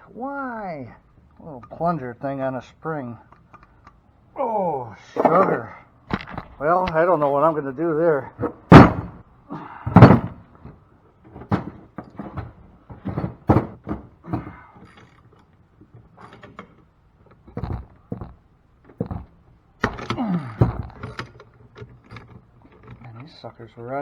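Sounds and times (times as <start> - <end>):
loud thump: 8.7 - 9.2, 9.9 - 10.4.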